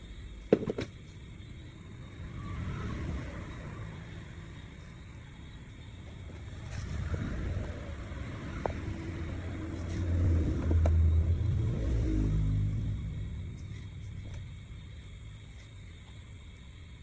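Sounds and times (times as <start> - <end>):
motor vehicle passing by: 1.8 - 15.4.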